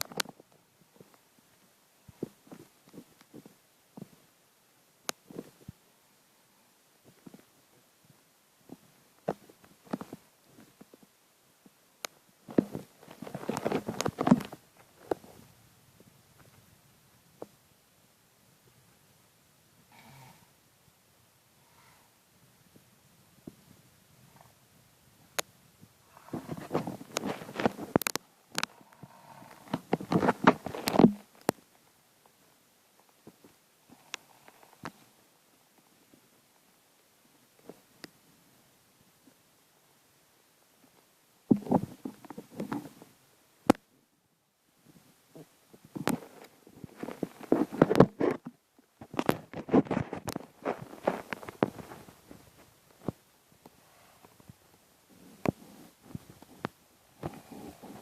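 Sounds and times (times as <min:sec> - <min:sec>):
man snoring: 0:19.9 - 0:20.5.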